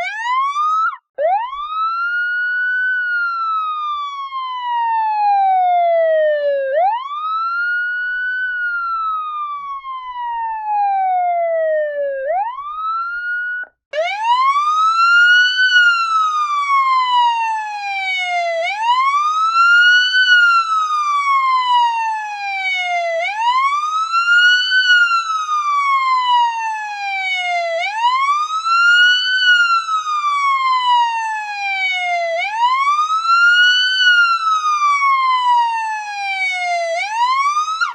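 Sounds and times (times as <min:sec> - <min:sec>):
bright police siren wailing: 0:00.0 - 0:37.9
police siren wailing: 0:00.0 - 0:37.9.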